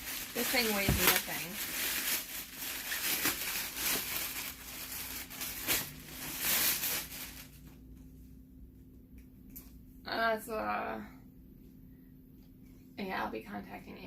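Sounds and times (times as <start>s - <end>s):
packaging rustling and crinkling: 0.0s - 7.8s.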